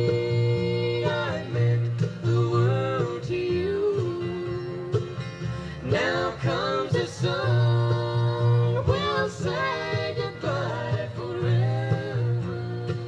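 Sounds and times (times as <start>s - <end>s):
country song with sung vocal: 0.0s - 13.0s
plucked guitar: 0.0s - 13.0s.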